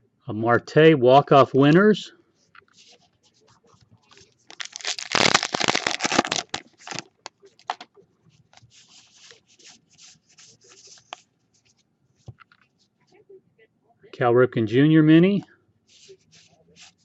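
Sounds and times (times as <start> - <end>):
trading cards rustling: 2.7 - 7.9.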